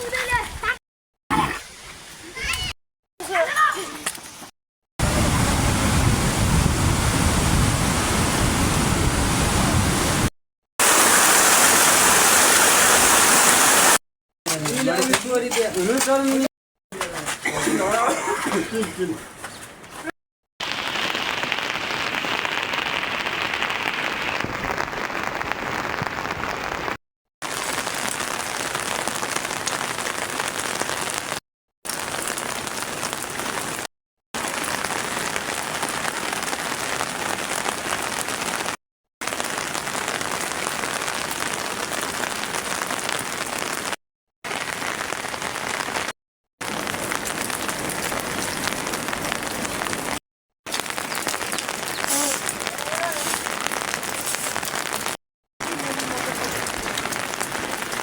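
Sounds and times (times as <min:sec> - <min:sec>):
heavy rain: 0:05.0 - 0:14.0, 0:20.6 - 0:58.0.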